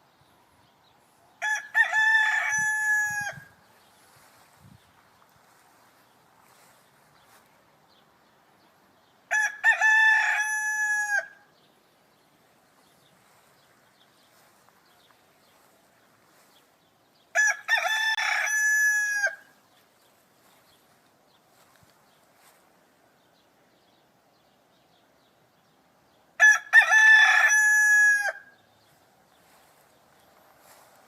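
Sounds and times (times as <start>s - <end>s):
rooster crowing: 1.4s - 3.6s, 9.3s - 11.5s, 17.3s - 19.5s, 26.4s - 28.6s.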